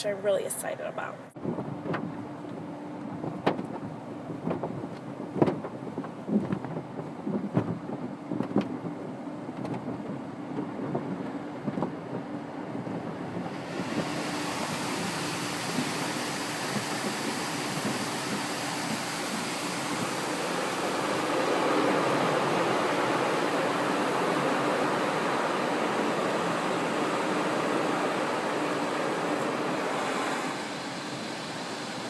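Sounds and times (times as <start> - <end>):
steady hum: 13.3 - 32.0
water spraying onto car: 13.4 - 32.0.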